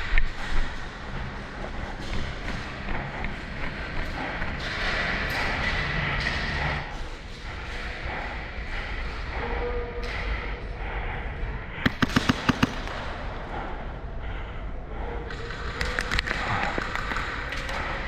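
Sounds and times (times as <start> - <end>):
airsoft gun shots: 11.8 - 13.1.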